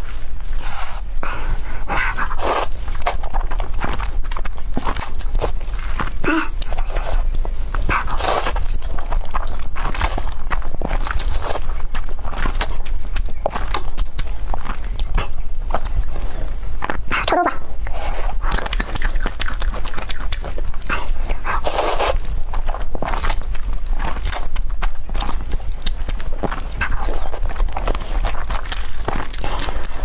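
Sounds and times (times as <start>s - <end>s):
slurping and chewing noodles: 0.0s - 30.0s
steady low hum: 0.0s - 30.0s.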